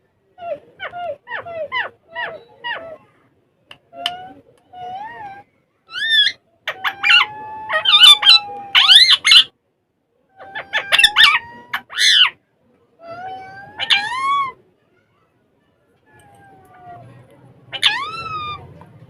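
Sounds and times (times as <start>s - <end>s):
parrots screeching calls: 5.0s - 9.5s, 10.4s - 12.4s, 13.2s - 14.6s, 17.7s - 18.7s.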